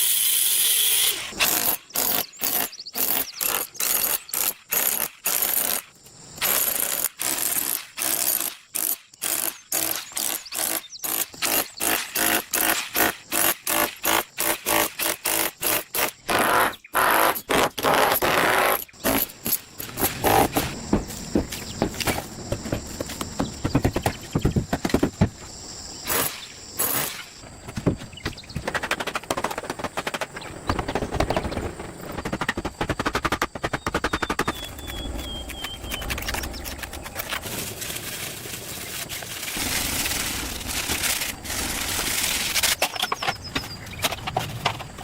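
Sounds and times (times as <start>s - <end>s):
sharp knocks and clatters: 19.0s - 25.5s, 26.1s - 34.9s.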